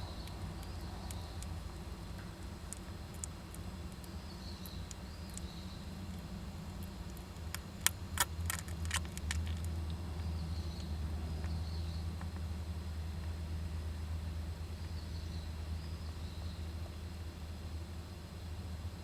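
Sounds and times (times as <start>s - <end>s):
squirrels clicking and scratching: 0.0s - 12.5s
steady low hum: 0.0s - 19.0s.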